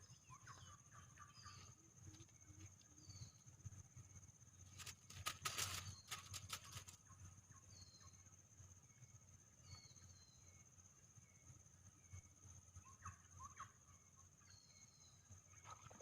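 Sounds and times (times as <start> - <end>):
bird chirps: 0.0 - 3.5
high insect drone: 0.0 - 16.0
rustling and clicking: 4.7 - 7.0.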